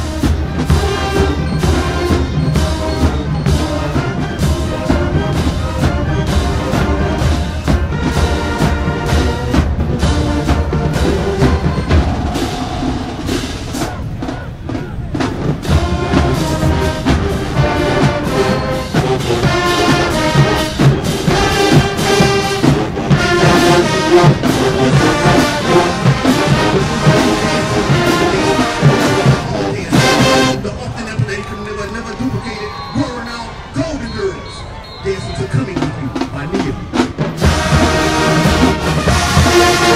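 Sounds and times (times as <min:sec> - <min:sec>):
brass section playing: 0:00.0 - 0:39.9
marching drum beat: 0:00.0 - 0:39.9.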